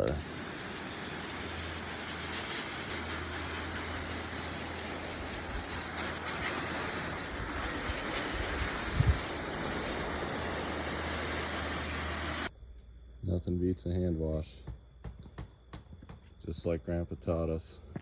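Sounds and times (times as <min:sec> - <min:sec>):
water spraying onto car: 0:00.0 - 0:12.5.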